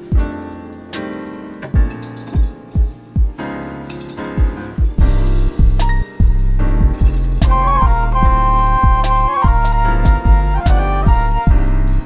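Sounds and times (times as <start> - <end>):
keyboard chords: 0.0 - 12.0
deep kick drum: 1.8 - 3.4, 4.4 - 12.0.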